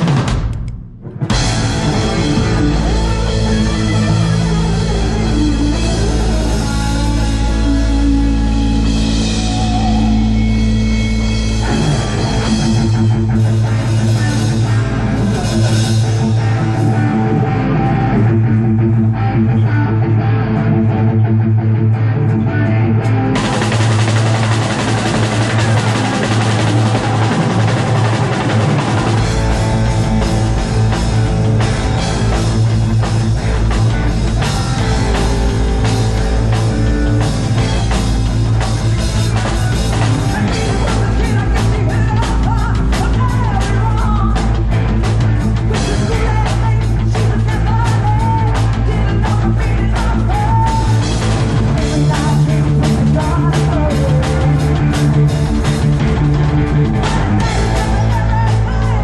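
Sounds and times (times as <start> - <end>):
bass and drum beat: 0.0 - 59.0
heavy rock band playing: 0.0 - 59.0.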